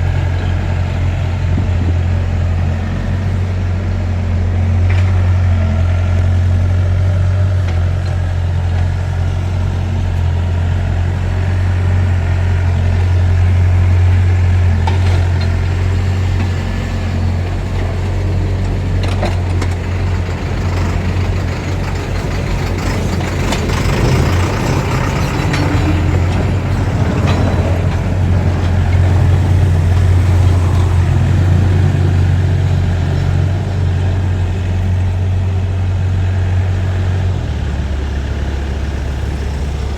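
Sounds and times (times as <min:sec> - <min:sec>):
heavy diesel engine humming: 0:00.0 - 0:39.9
metal clanks: 0:20.8 - 0:31.0.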